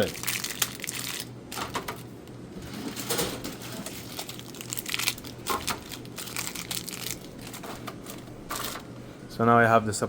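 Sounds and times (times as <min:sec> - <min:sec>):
plastic wrappers crinkling: 0:00.0 - 0:02.1, 0:03.5 - 0:08.9.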